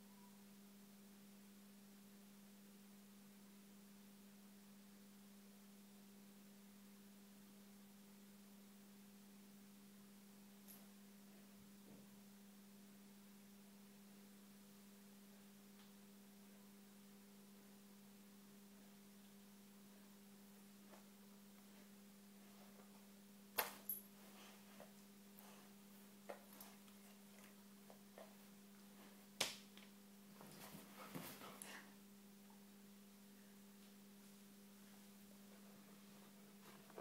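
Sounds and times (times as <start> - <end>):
low electrical hum: 0.0 - 37.0
faint clicks and rustles: 20.8 - 31.9.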